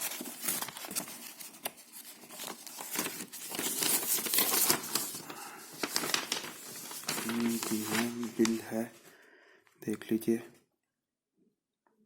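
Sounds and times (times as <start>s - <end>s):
paper crinkling and rustling: 0.0s - 9.2s.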